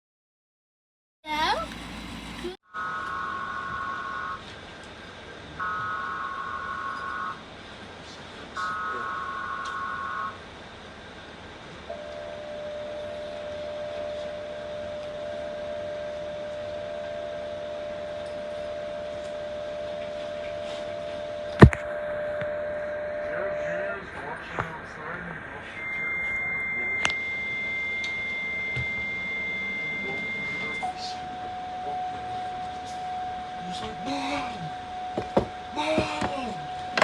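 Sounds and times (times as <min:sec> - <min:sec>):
data header tones: 0:02.7 - 0:04.5, 0:08.6 - 0:10.4, 0:25.0 - 0:37.0
two-tone attention signal: 0:02.7 - 0:04.5, 0:08.6 - 0:10.4, 0:11.9 - 0:24.1, 0:25.7 - 0:37.0.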